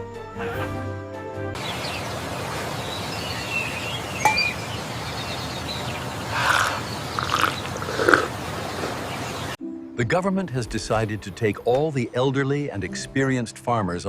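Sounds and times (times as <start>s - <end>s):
bird chirps: 1.6s - 9.6s
steady background hiss: 1.6s - 9.6s
short animal calls: 2.0s - 9.6s.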